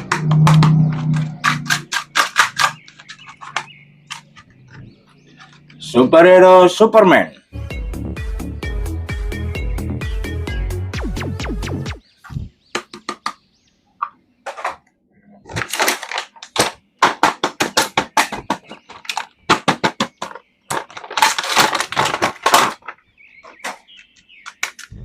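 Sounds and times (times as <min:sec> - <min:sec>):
sharp plastic clicks: 0:00.0 - 0:05.8, 0:15.5 - 0:25.0
plastic packaging crinkling: 0:15.5 - 0:16.7, 0:20.7 - 0:24.8.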